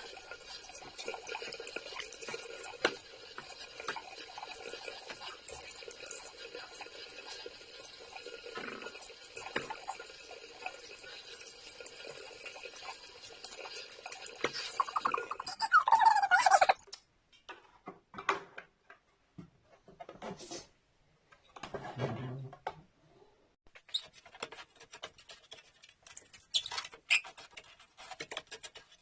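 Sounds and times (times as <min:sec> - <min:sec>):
water running from a tap: 0:00.0 - 0:16.8.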